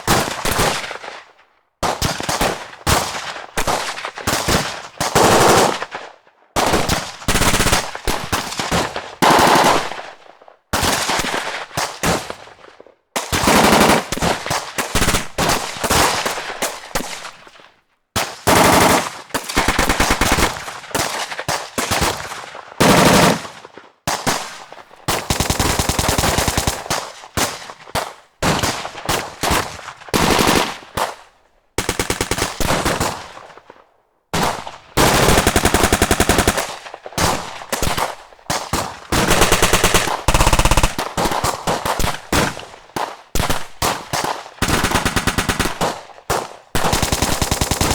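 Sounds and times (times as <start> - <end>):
automatic gunfire bursts: 2.3 - 5.9, 6.6 - 10.2, 13.3 - 16.7, 18.4 - 21.2, 21.9 - 23.6, 24.2 - 27.6, 28.4 - 31.1, 31.8 - 33.4, 34.4 - 42.8, 43.4 - 47.9.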